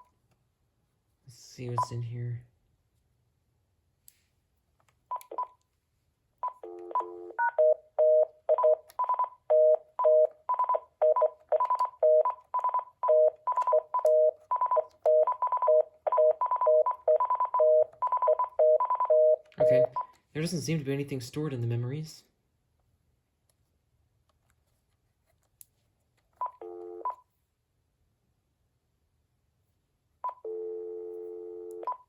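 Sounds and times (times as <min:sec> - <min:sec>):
phone keypad beeping: 0:06.4 - 0:20.2.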